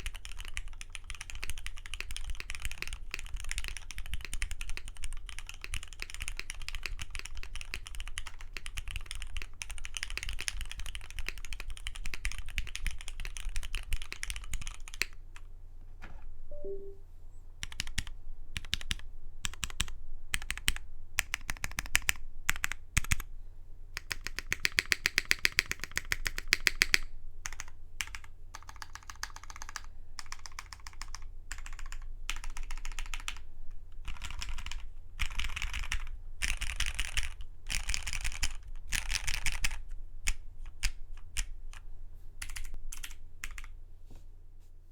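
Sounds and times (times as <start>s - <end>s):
mechanical keyboard typing: 0.0s - 15.2s, 24.1s - 33.4s, 34.0s - 41.8s, 42.4s - 43.7s.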